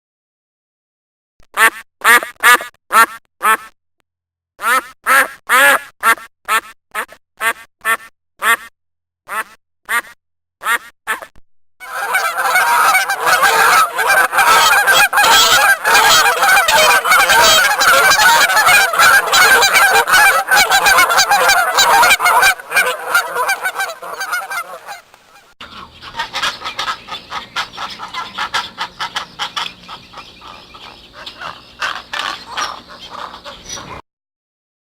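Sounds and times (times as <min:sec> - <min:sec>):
ducks quacking: 0:09.3 - 0:34.0
geese honking: 0:11.8 - 0:34.0.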